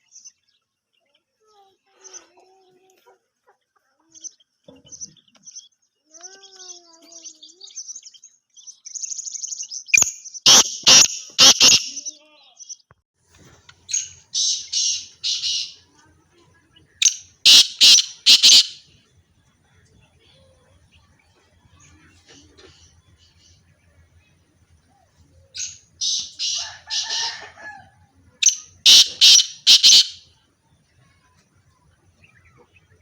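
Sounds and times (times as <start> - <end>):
high chirping: 10.0 - 12.0, 13.9 - 15.8, 17.0 - 18.8, 25.6 - 27.6, 28.4 - 30.2
francolins calling harshly: 10.5 - 12.1, 13.9 - 15.8, 17.0 - 18.9, 25.5 - 30.3.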